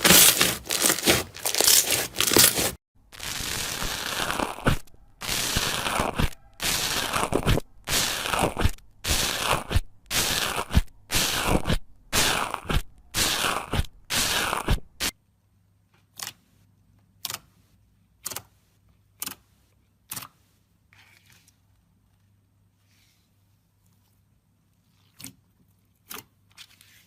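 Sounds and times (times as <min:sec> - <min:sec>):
slime squished by hand: 0:00.0 - 0:02.8.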